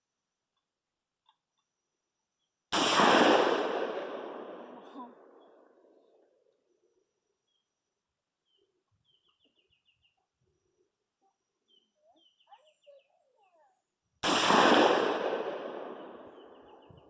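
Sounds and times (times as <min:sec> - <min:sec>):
rifle shot with echo: 0:02.7 - 0:05.9, 0:14.2 - 0:17.0
small birds chirping: 0:07.1 - 0:14.0, 0:15.9 - 0:17.0.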